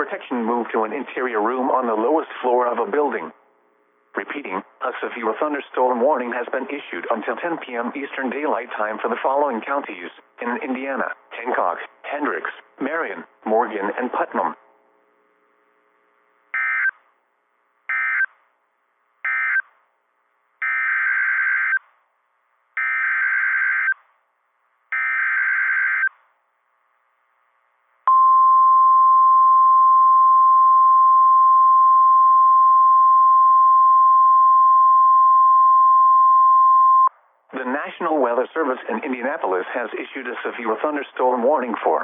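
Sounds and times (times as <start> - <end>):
steady warning alarm tone: 16.6 - 16.9, 17.9 - 18.3, 19.2 - 19.7, 20.6 - 21.8, 22.8 - 24.0, 24.9 - 26.2.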